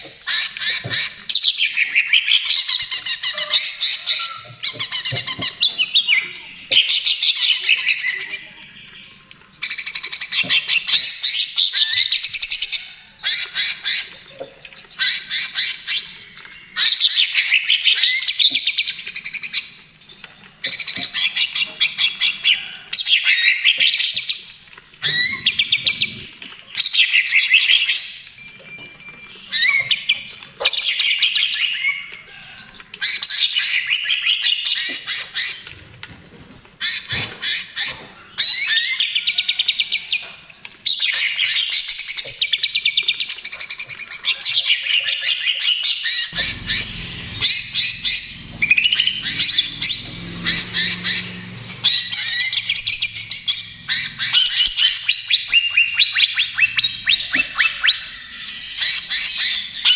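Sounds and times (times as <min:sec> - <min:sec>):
bird singing fast high notes: 0:46.3 - 0:58.6.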